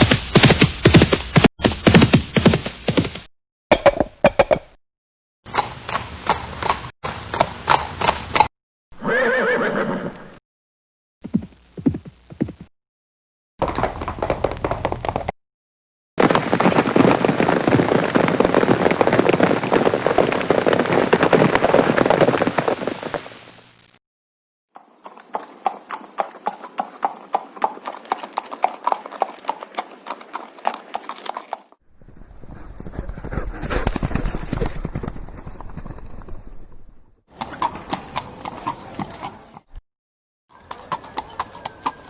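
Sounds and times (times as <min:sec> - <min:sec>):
horse hoofbeats at a run: 0:00.0 - 0:03.3, 0:11.2 - 0:12.7, 0:13.6 - 0:15.3, 0:24.8 - 0:39.8, 0:40.5 - 0:42.0.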